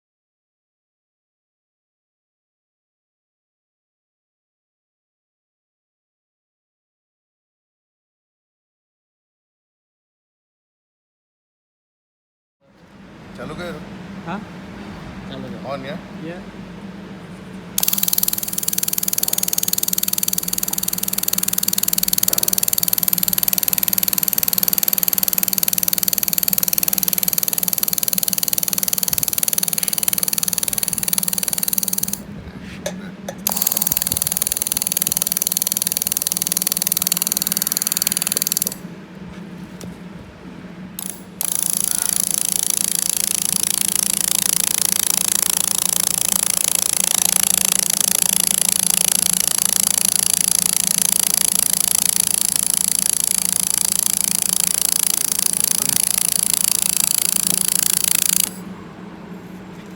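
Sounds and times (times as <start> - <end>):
low machine hum: 12.6 - 59.9.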